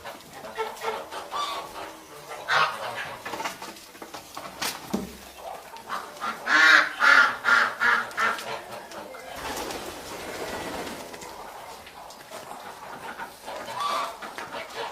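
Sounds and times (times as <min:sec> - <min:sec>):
domestic fowl calling: 0:00.0 - 0:03.4, 0:05.9 - 0:09.5, 0:10.3 - 0:14.9.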